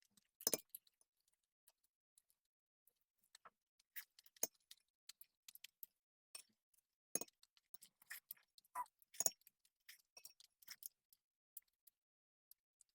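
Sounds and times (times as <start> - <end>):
soft chewing: 3.3 - 6.0, 7.2 - 12.9.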